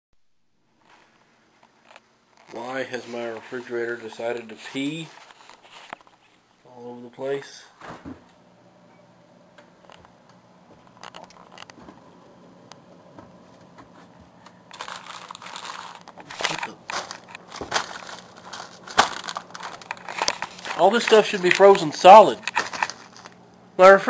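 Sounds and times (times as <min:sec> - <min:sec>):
low steady hum: 0:00.2 - 0:24.0
plastic packaging crinkling: 0:04.8 - 0:06.4, 0:14.7 - 0:23.4.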